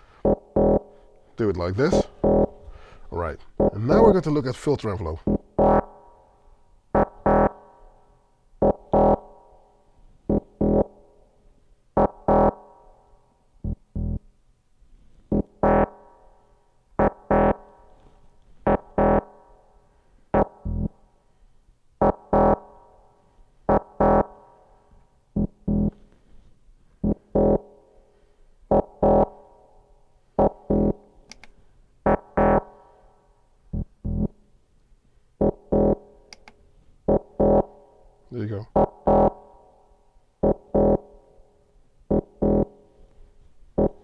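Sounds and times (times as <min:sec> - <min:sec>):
plucky synth notes: 0:20.4 - 0:20.9, 0:33.8 - 0:34.3.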